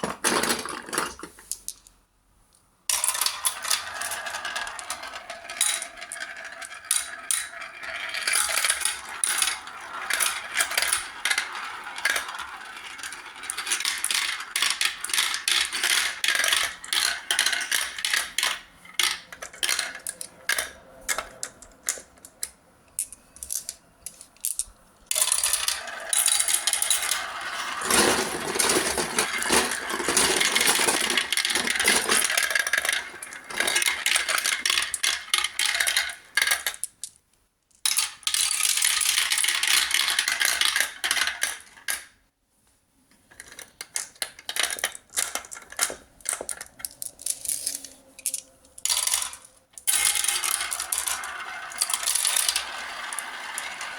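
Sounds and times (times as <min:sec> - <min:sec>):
marbles rolling and clacking: 0:02.9 - 0:37.2, 0:37.9 - 0:42.1, 0:43.4 - 0:53.9.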